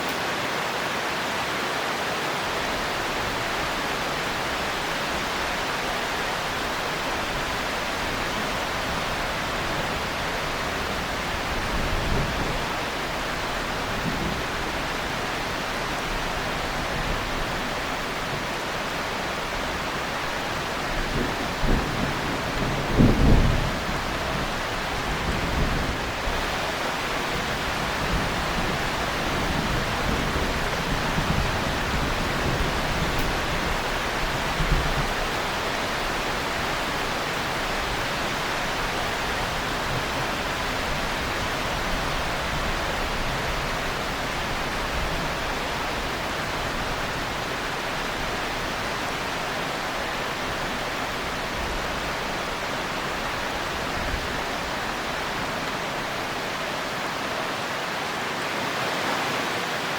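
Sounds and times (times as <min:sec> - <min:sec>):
heavy rain falling: 0:00.0 - 0:59.9
distant thunder rumbling: 0:20.4 - 0:26.5.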